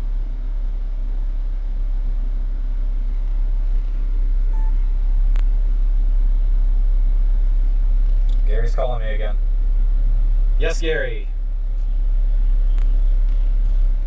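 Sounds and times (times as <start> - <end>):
vehicle rumble: 0.0 - 14.0
short beep: 4.5 - 4.9.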